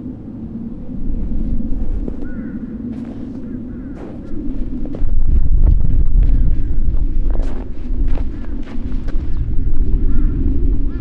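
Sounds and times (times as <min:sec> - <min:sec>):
wind buffeting microphone: 0:00.0 - 0:11.0.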